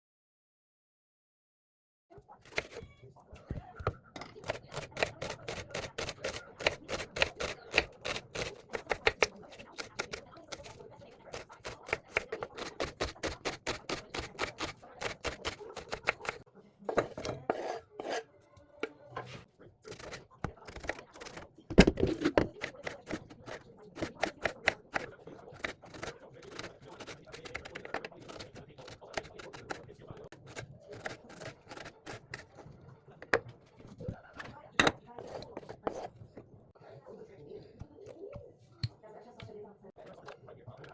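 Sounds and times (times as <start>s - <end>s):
knife chopping on cutting board: 3.8s - 16.4s.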